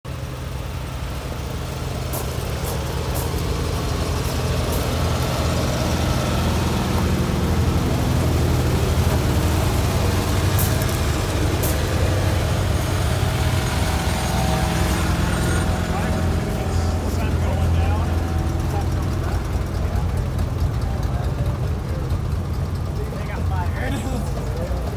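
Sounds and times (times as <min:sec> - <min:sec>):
small gasoline engines idling: 0:00.1 - 0:24.9.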